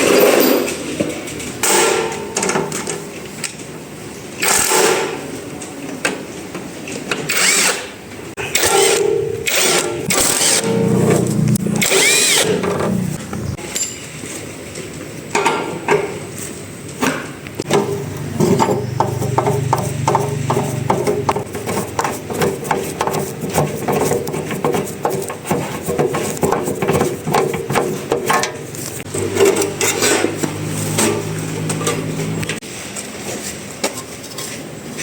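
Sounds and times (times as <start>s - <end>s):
tools knocking on metal: 17.7s - 29.9s.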